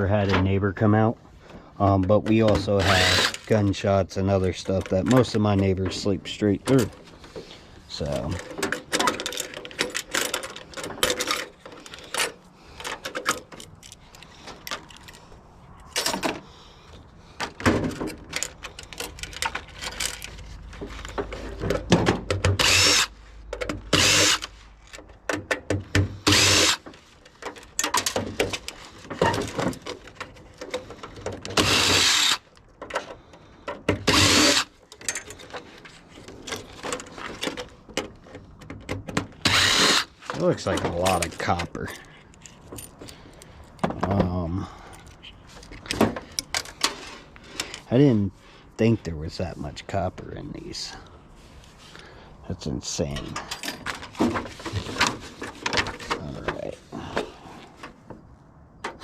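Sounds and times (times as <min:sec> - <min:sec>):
power drill bursts: 0:02.8 - 0:03.5, 0:22.6 - 0:23.2, 0:23.9 - 0:24.5, 0:26.2 - 0:26.8, 0:31.6 - 0:32.4, 0:34.0 - 0:34.8, 0:39.4 - 0:40.2.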